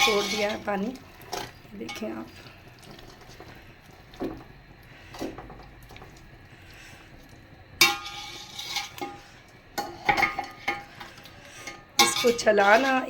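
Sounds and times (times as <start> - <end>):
spoon scraping metal pot: 0.0 - 2.2, 7.8 - 13.0
spoon clanking against pot: 7.8 - 9.2, 9.8 - 13.0.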